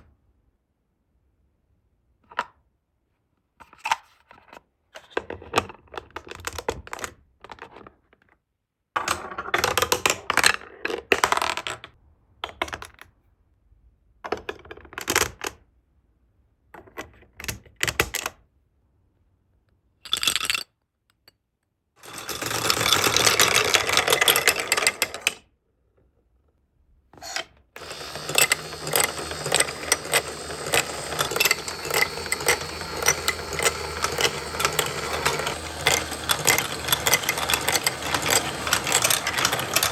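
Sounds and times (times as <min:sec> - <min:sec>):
marbles clicking on block edges: 0:22.0 - 0:25.3, 0:27.8 - 0:39.9
marbles rolling on plastic track: 0:22.0 - 0:25.4, 0:27.8 - 0:39.9.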